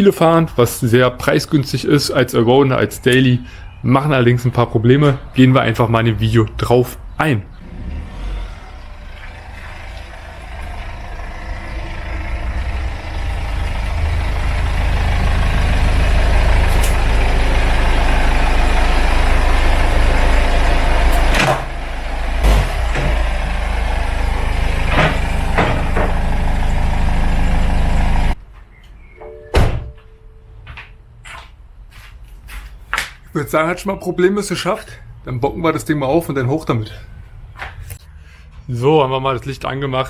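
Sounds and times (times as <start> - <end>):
diesel engine running: 2.9 - 28.4
sharp knocks: 22.4 - 23.3, 24.9 - 26.3.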